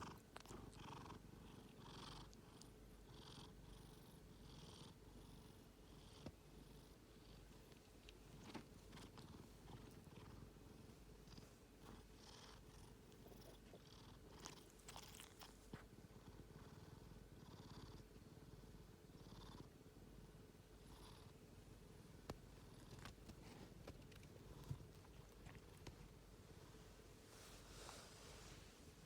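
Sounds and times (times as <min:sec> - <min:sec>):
pet snoring: 0:00.0 - 0:06.8, 0:11.3 - 0:18.0.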